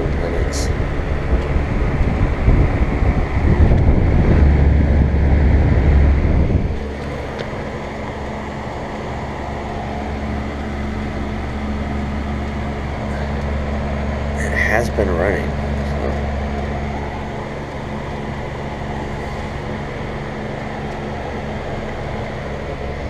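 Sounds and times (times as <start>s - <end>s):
air conditioner electrical hum: 0.0s - 23.0s
heavy low rumble: 0.0s - 23.0s.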